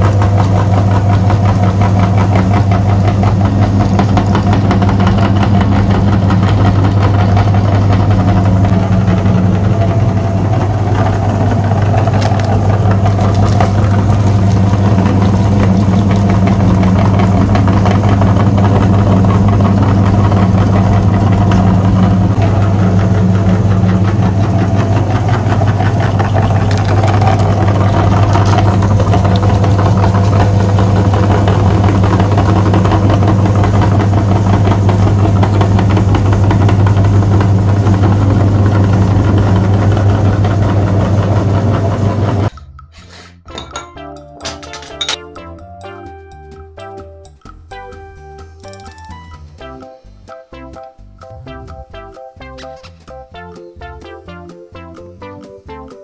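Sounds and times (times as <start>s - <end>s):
engine idling: 0.0s - 42.6s.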